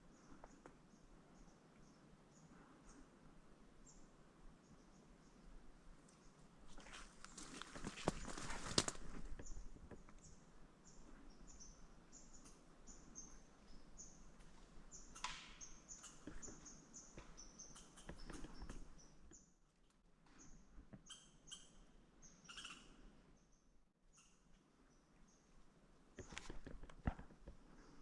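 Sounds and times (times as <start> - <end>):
rustling with sharp clicks: 6.7 - 10.2, 26.2 - 28.0
small bird chirping: 9.2 - 19.6, 20.4 - 25.5.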